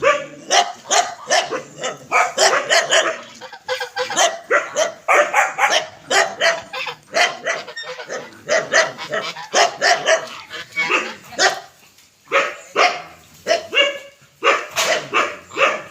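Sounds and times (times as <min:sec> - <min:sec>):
ducks quacking: 0:00.0 - 0:11.7.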